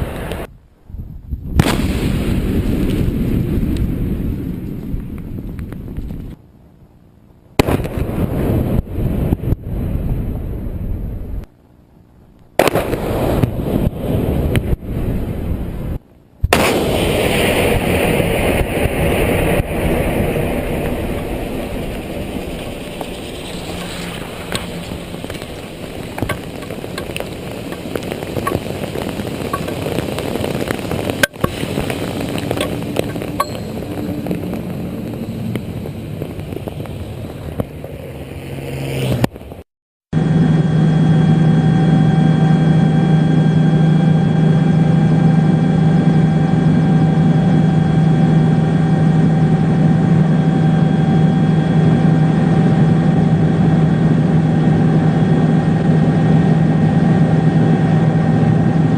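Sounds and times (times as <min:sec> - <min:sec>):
large explosions with deep rumble: 0:01.4 - 0:06.3, 0:07.6 - 0:11.5, 0:12.6 - 0:38.0
scattered crackles: 0:01.6 - 0:06.4, 0:12.3 - 0:15.1, 0:16.4 - 0:39.6.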